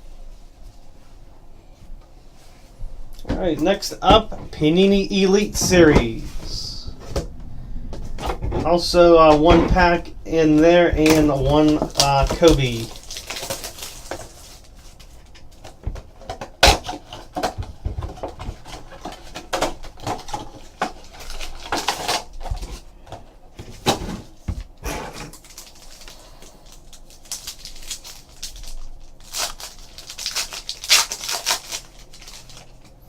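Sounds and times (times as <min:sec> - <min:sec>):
foil packs crinkling and rustling: 0:08.2 - 0:33.0.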